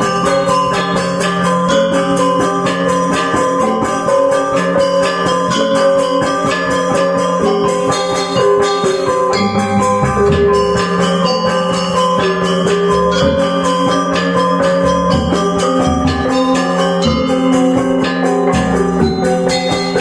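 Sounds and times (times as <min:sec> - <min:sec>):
gamelan metallophones playing: 0:00.0 - 0:20.0.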